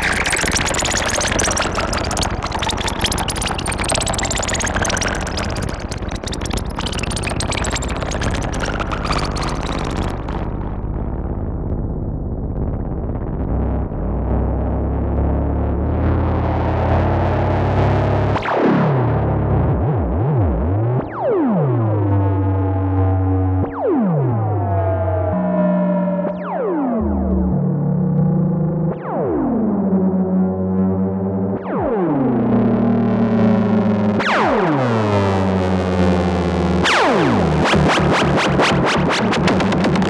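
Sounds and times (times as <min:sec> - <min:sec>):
rapid bright synth pulsing: 0:00.0 - 0:10.4
synthesizer drone of swooping notes: 0:00.0 - 0:40.0.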